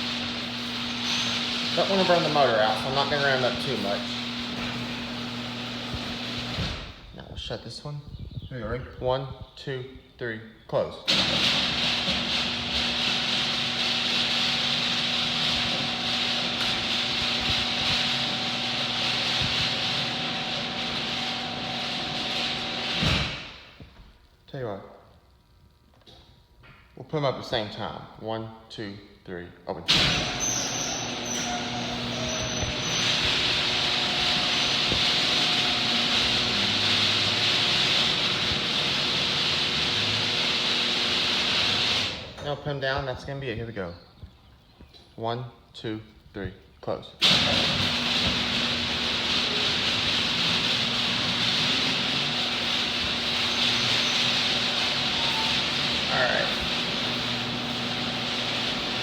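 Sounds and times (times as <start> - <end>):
garage door opener running: 0.0 - 7.1, 11.1 - 23.8, 29.9 - 42.6, 47.2 - 59.0.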